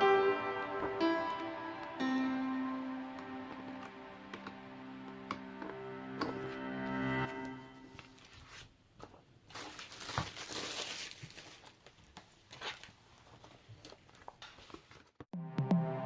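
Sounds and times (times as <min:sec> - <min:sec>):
packaging rustling and crinkling: 0:07.9 - 0:15.2.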